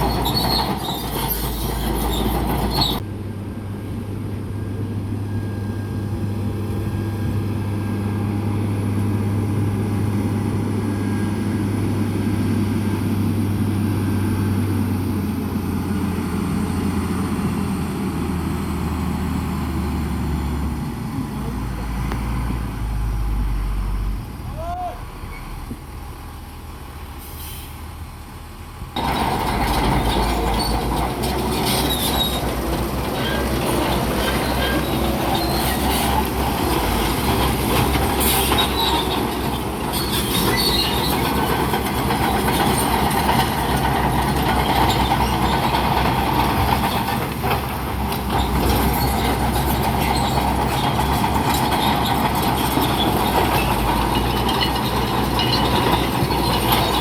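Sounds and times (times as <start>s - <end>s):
crawler tracks clanking and squealing: 0.0s - 3.0s, 29.0s - 57.0s
bulldozer engine under load: 0.0s - 57.0s.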